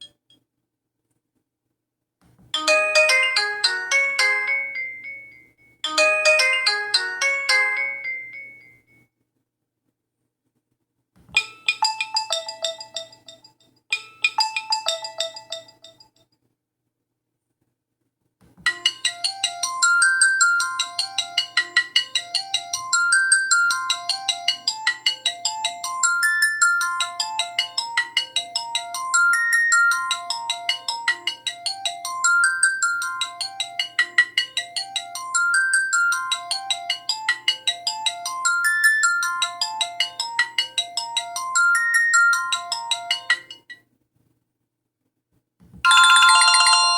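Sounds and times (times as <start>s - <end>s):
phone ringtone melody: 2.6s - 8.9s, 11.4s - 16.0s, 18.7s - 43.8s, 45.8s - 46.9s
mobile phone jingle: 45.8s - 46.9s.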